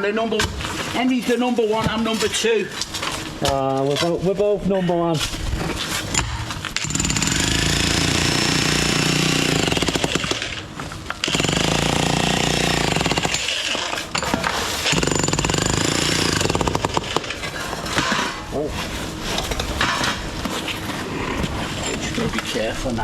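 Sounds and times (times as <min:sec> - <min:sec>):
jackhammer breaking concrete: 0:06.8 - 0:18.4.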